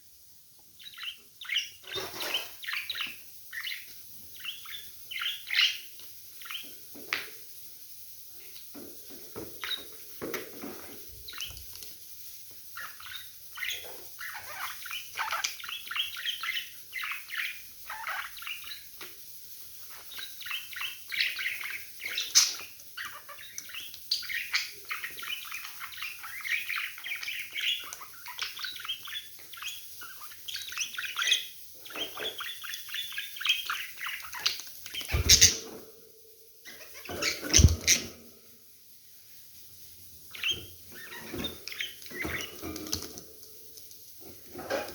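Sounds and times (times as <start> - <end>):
budgerigars chattering: 20.1 - 35.8, 36.7 - 38.2.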